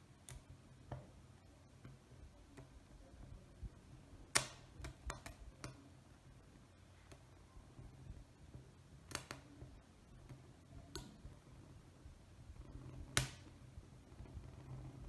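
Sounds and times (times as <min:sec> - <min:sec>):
light clicks and taps: 0:01.8 - 0:05.8.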